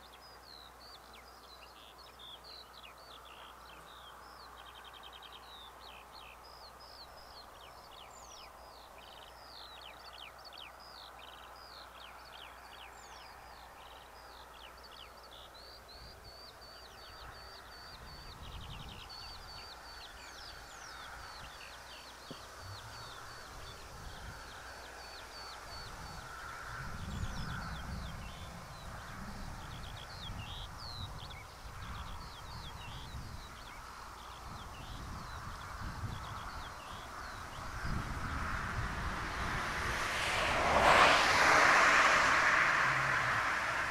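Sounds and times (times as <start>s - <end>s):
low rumble: 38.6s - 43.9s.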